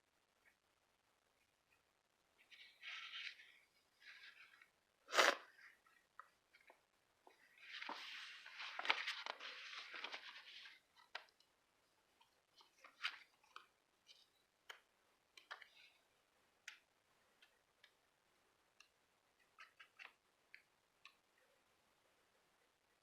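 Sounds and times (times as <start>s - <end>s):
paper rustling: 7.4s - 11.3s, 12.5s - 14.3s.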